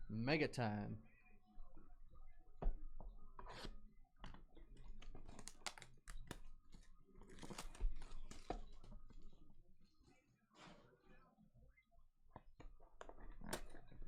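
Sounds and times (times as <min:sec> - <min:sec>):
packaging crinkling and tearing: 0:05.1 - 0:09.1.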